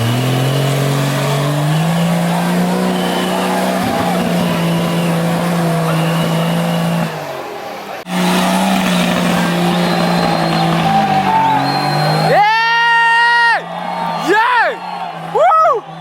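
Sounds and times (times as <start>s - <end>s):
engine revving hard: 0.0s - 13.0s
spectator whooping: 8.4s - 16.0s.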